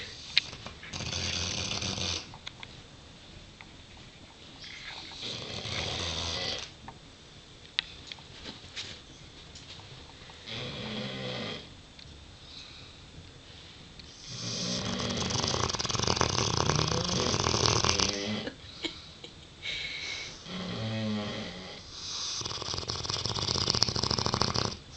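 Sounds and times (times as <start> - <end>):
dog snoring: 0.0 - 2.3, 4.6 - 6.7, 10.4 - 11.7, 14.1 - 18.5, 20.4 - 24.9.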